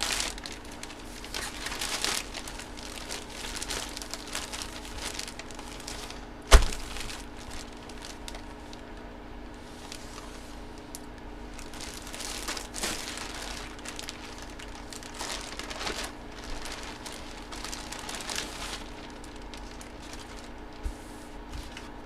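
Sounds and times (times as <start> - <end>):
plastic packaging crinkling: 0.0 - 9.1, 9.8 - 20.9
low steady hum: 0.0 - 22.0.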